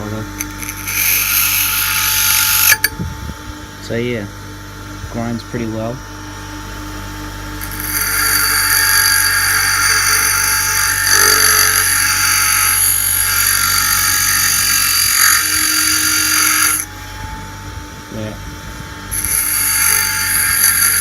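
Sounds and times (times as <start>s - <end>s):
bench grinder motor whining: 0.0s - 3.4s, 4.8s - 21.0s
steel grinding on wheel: 0.4s - 2.9s, 7.6s - 17.2s, 19.1s - 21.0s.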